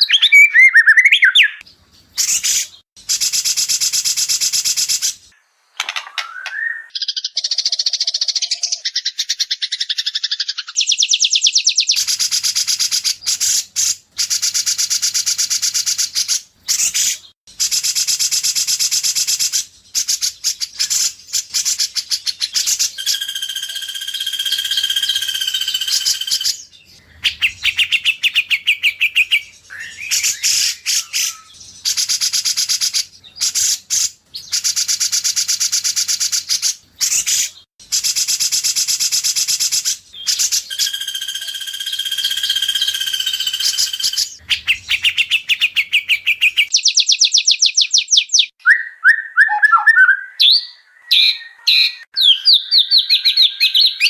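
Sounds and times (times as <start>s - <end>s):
songbird trilling: 0.0s - 2.8s, 21.8s - 33.6s, 40.2s - 54.0s
bird whistling: 0.0s - 5.1s, 6.1s - 13.6s, 20.0s - 37.6s, 38.8s - 54.0s.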